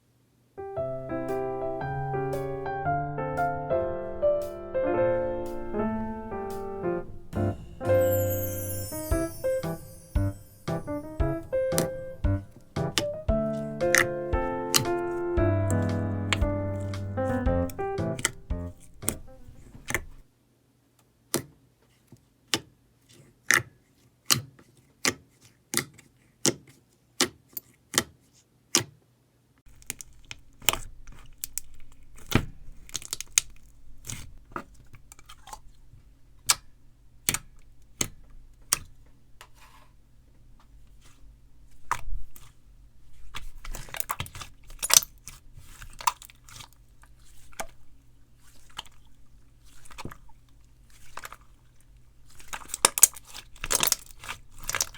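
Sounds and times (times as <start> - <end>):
slime crackling and crunching: 41.8 - 54.9.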